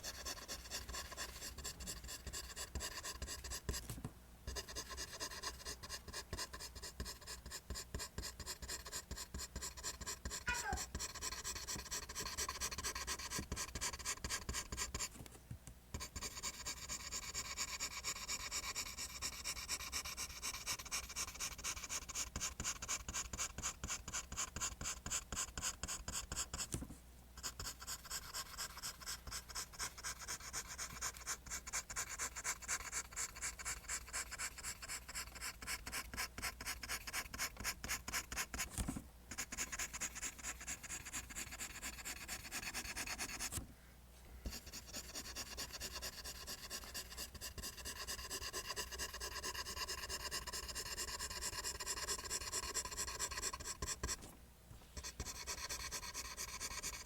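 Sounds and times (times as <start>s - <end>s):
pencil scratching on paper: 0.0s - 3.9s, 4.5s - 15.1s, 16.0s - 26.8s, 27.4s - 43.6s, 44.5s - 54.2s, 55.0s - 57.0s.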